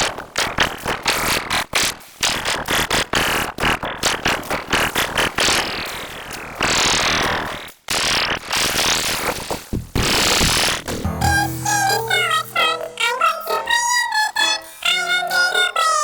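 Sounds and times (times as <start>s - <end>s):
processed cartoon soundtrack: 11.1s - 16.0s.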